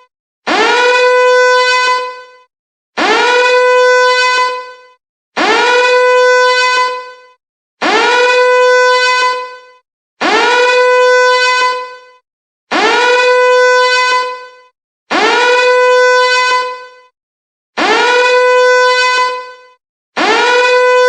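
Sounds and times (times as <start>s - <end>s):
siren wails: 0.5s - 2.4s, 3.0s - 7.1s, 7.8s - 12.0s, 12.7s - 14.4s, 15.1s - 16.9s, 17.8s - 19.6s, 20.2s - 21.0s.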